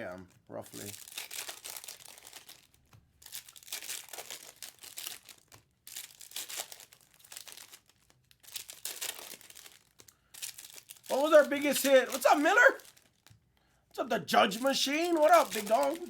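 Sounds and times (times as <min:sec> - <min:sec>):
foil wrappers crinkling: 0:00.0 - 0:13.4, 0:14.0 - 0:16.0.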